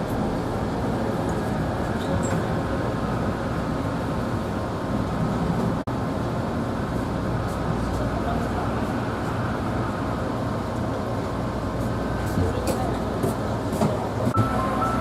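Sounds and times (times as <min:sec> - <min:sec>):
train car rumble: 0:00.0 - 0:15.0.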